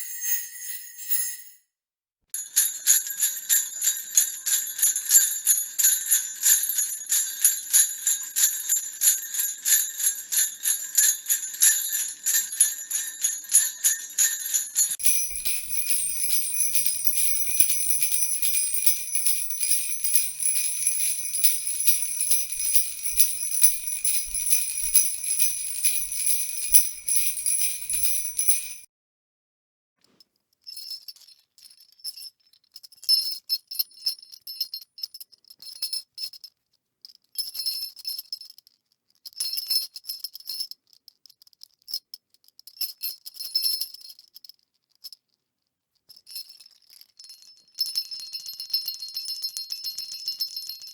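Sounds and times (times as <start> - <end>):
jingle bells shaken: 0.0 - 1.6, 2.4 - 28.9, 46.5 - 50.9.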